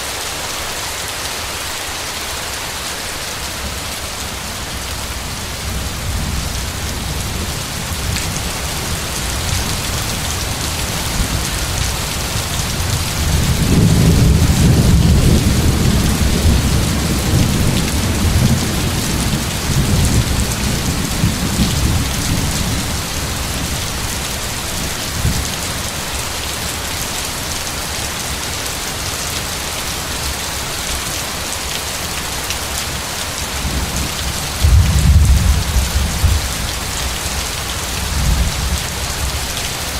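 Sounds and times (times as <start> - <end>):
steady rain falling: 0.0 - 39.9
low roll of thunder: 34.5 - 36.9.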